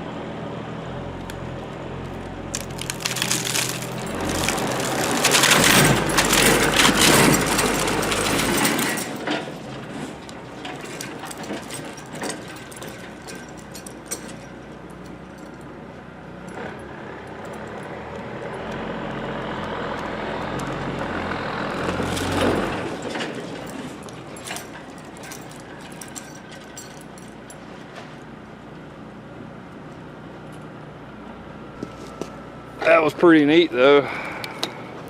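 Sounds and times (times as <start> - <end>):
truck engine working under load: 0.0 - 35.0.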